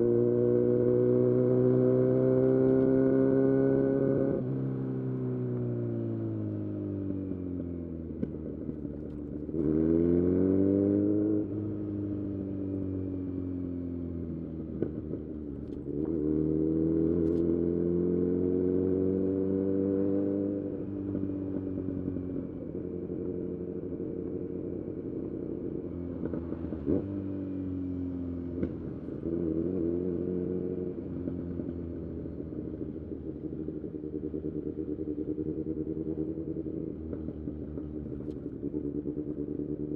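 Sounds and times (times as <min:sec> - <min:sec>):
motorcycle engine accelerating: 0:08.1 - 0:39.9.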